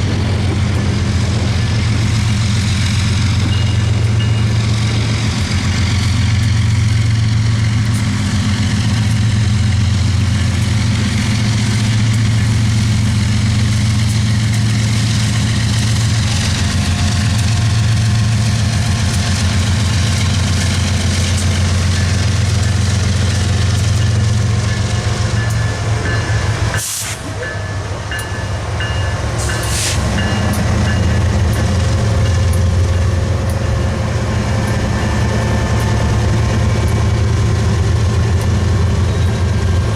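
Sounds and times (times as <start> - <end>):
diesel locomotive engine droning: 0.0 - 39.9
short hiss: 26.8 - 27.3, 29.6 - 30.0.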